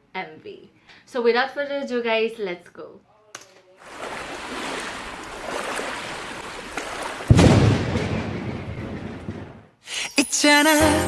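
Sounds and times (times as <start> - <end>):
deep boom: 7.3 - 9.7.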